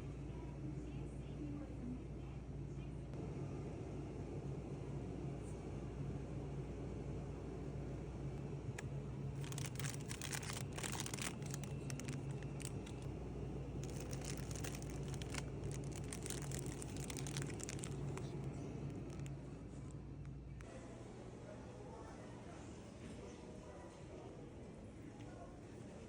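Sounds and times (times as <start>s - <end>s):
steady low hum: 0.0s - 21.6s
food packaging crinkling: 9.4s - 19.4s.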